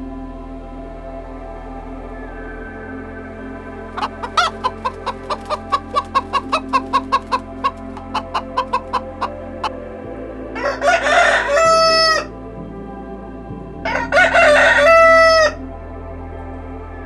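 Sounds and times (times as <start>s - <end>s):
rooster crowing: 4.0s - 9.3s
chickens clucking: 4.0s - 9.8s.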